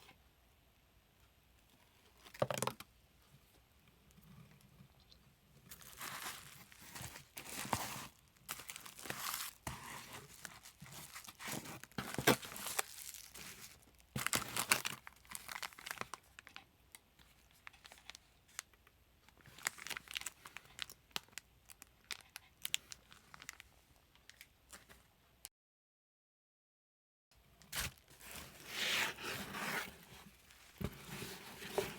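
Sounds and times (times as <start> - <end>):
packaging crinkling and tearing: 5.7 - 16.6, 19.4 - 24.9.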